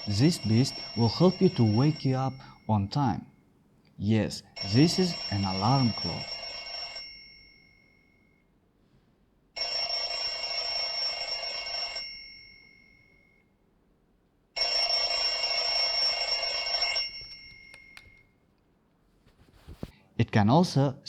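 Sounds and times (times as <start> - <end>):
alarm clock ringing: 0.0 - 2.9, 4.6 - 8.4, 9.6 - 13.4, 14.6 - 18.2.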